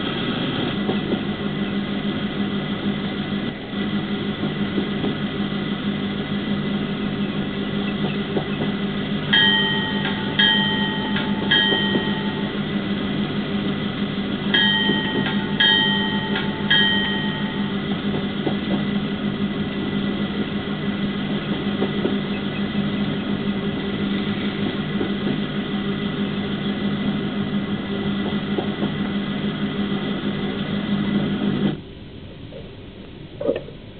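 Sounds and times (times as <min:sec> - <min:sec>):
model diesel engine hum: 0:00.0 - 0:33.9
locomotive bell ringing: 0:09.1 - 0:18.4.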